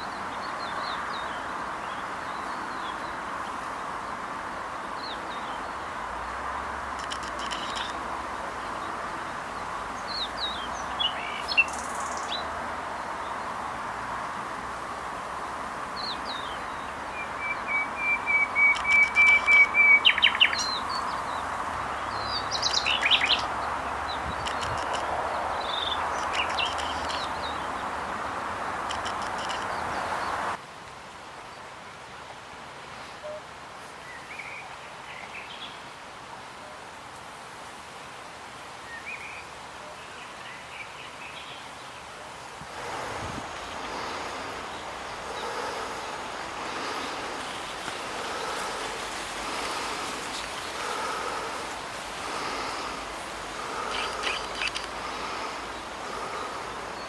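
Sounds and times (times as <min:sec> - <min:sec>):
songbirds singing and chirping: 0:06.9 - 0:13.6, 0:15.4 - 0:30.6, 0:38.7 - 0:57.0
steady rushing noise: 0:18.3 - 0:30.6, 0:42.2 - 0:57.0.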